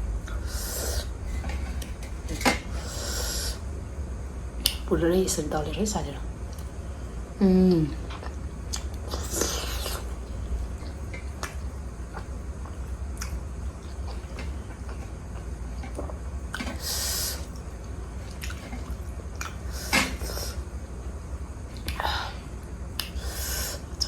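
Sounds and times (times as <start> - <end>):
wet chewing mouth sounds: 7.9 - 20.6.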